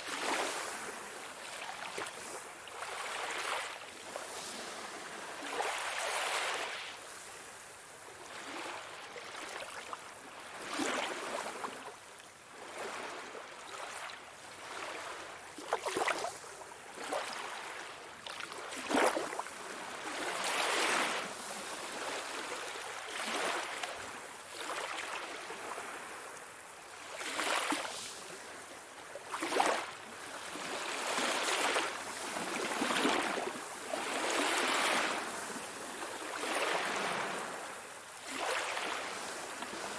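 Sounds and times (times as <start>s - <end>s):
sea waves breaking: 0.0s - 6.9s, 27.0s - 39.9s.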